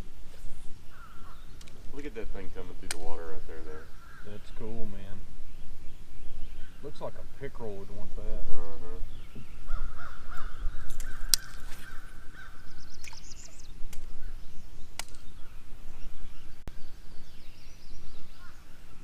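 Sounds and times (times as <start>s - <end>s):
birds calling: 0.0s - 19.0s
high bird chirps: 9.1s - 19.0s
sharp clicks: 15.0s - 15.2s.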